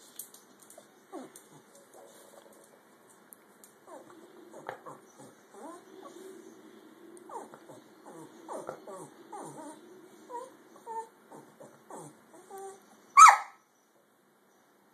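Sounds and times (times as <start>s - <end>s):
dog whimpering and squealing: 5.2s - 6.1s, 7.3s - 13.4s.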